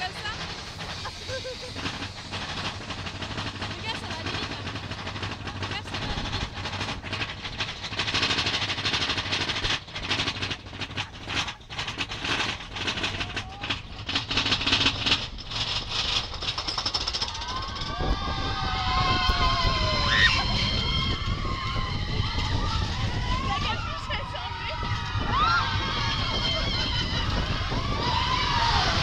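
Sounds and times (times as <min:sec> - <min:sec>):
train wheels clattering on rails: 0:00.0 - 0:29.0.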